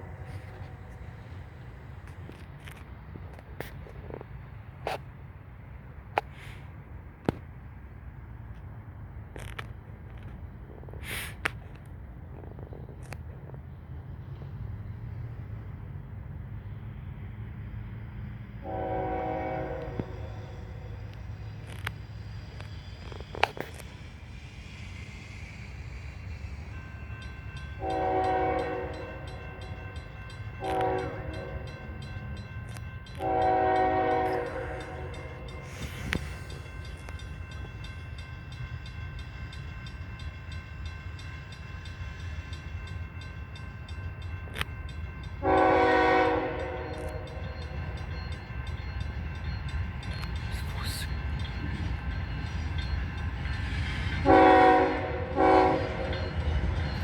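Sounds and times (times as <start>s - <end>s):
locomotive engine rumble: 0.0s - 57.0s
train air horn blasts: 18.6s - 21.1s, 27.8s - 29.8s, 30.6s - 32.0s, 33.2s - 36.6s, 45.4s - 47.5s, 54.2s - 56.2s.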